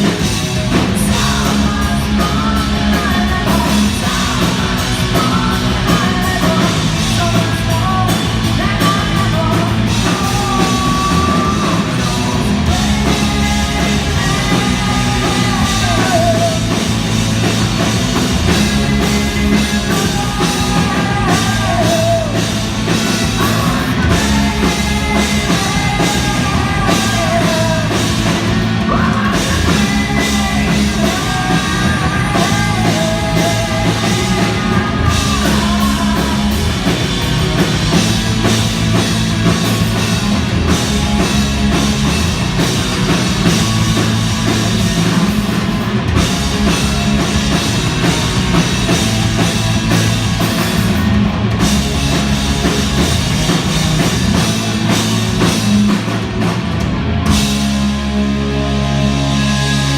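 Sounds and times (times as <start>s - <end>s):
person singing: 0.0s - 17.0s, 18.4s - 37.2s
bass: 0.0s - 59.9s
drums: 0.0s - 59.9s
electric guitars: 0.0s - 59.9s.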